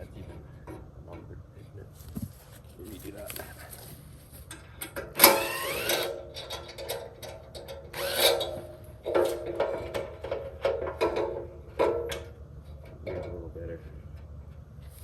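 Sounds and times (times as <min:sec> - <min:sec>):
impact driver driving screws: 0:05.2 - 0:06.6.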